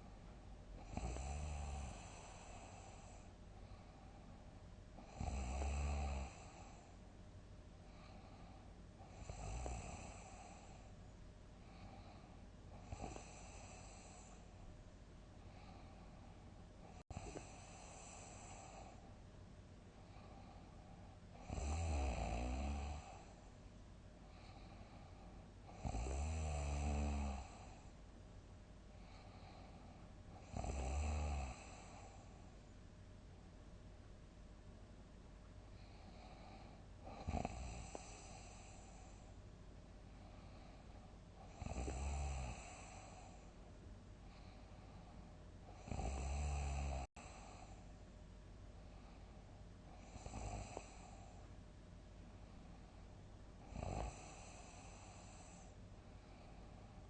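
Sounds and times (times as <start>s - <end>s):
person snoring loudly: 0.8s - 3.1s, 5.0s - 6.6s, 9.1s - 10.6s, 21.4s - 23.3s, 25.8s - 27.8s, 30.4s - 32.0s, 37.1s - 38.9s, 41.5s - 43.3s, 45.8s - 47.5s, 50.0s - 51.2s, 53.6s - 55.7s.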